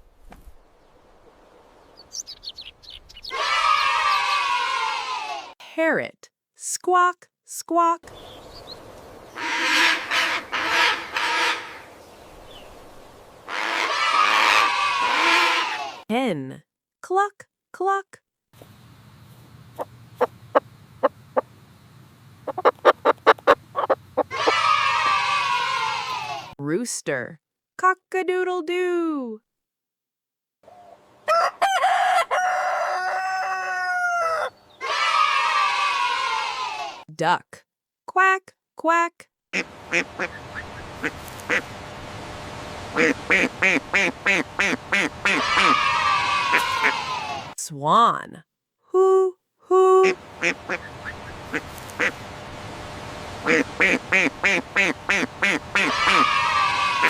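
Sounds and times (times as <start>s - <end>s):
parrot squawking: 3.2s - 5.2s, 9.4s - 11.9s, 13.5s - 16.0s, 22.6s - 26.5s, 31.8s - 36.8s, 43.0s - 47.6s, 50.0s - 52.2s, 53.4s - 57.0s
rooster crowing: 3.3s - 5.5s, 13.5s - 16.0s, 24.3s - 26.5s, 31.2s - 37.0s, 45.3s - 47.6s, 55.8s - 57.0s
faint steady hiss: 8.1s - 13.5s, 18.6s - 24.2s, 39.6s - 45.4s, 50.1s - 56.0s.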